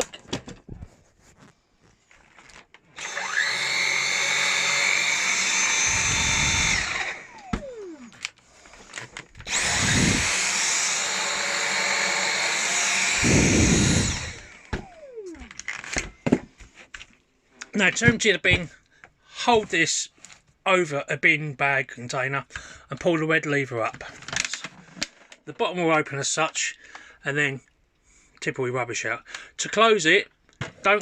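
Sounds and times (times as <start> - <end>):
vacuum motor whining: 2.9 - 16.1.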